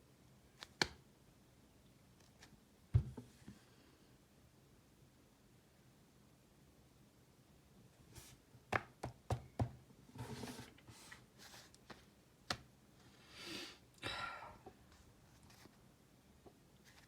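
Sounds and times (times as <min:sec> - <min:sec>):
rustling and shuffling: 0:10.1 - 0:13.2, 0:14.8 - 0:17.0.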